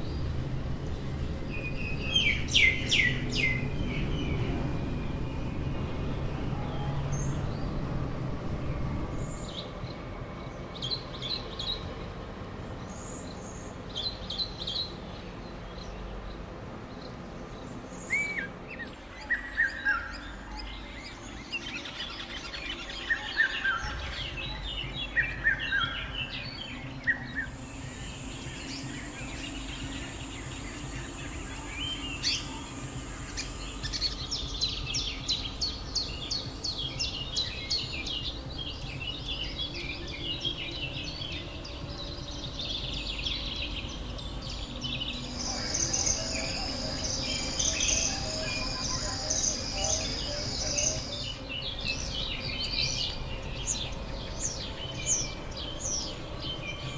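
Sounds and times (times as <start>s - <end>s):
birds chirping and calling: 19.0s - 56.9s
low background rumble: 19.0s - 56.9s
steady high hiss: 19.0s - 56.9s.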